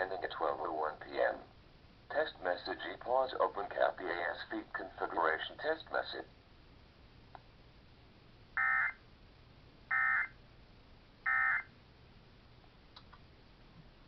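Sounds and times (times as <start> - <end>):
two-tone digital squawk bursts: 8.6 - 9.0, 9.9 - 10.3, 11.3 - 11.7.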